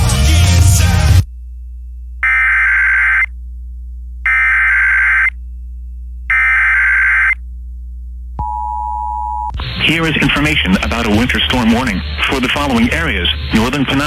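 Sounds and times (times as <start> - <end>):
warbling data tones: 2.2 - 3.3, 4.2 - 5.5, 6.3 - 7.4.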